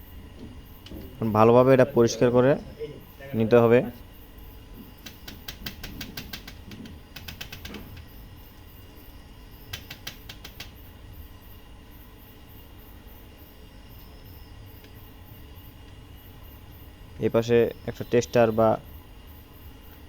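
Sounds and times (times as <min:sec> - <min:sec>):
faint steady hum: 0:00.0 - 0:20.0
light clicks and ticks: 0:05.0 - 0:08.1, 0:09.7 - 0:10.8.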